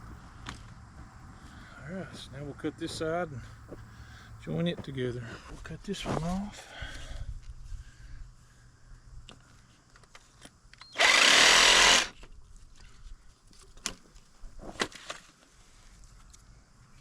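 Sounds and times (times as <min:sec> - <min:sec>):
power tool cutting plastic pipe: 0:10.9 - 0:12.2.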